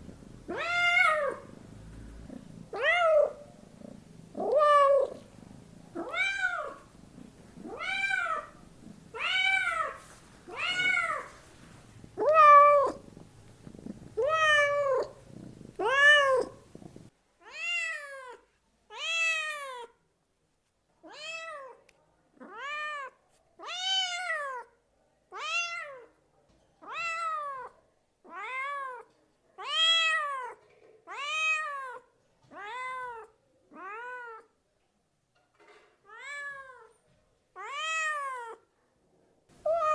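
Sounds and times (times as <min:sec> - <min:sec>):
low background hiss: 0:00.0 - 0:24.1, 0:37.7 - 0:39.9
cat meowing: 0:00.5 - 0:01.6, 0:02.7 - 0:03.5, 0:04.3 - 0:05.3, 0:05.9 - 0:06.9, 0:07.6 - 0:19.9, 0:36.1 - 0:36.9, 0:37.6 - 0:38.6, 0:39.6 - 0:39.9.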